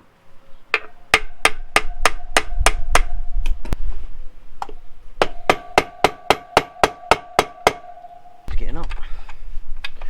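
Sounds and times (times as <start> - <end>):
wind rumbling on microphone: 0.2 - 5.8, 7.9 - 10.0
hammer striking wood block: 0.7 - 3.2, 4.6 - 8.5.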